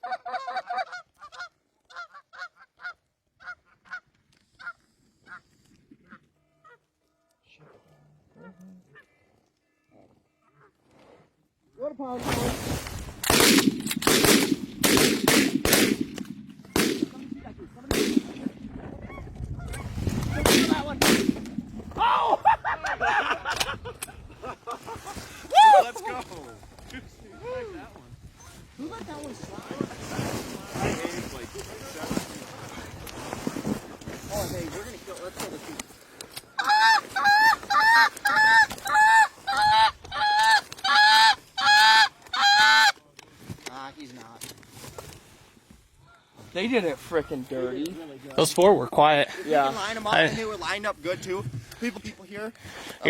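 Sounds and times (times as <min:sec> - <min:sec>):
shotgun shots: 0:13.2 - 0:18.6, 0:20.2 - 0:21.8.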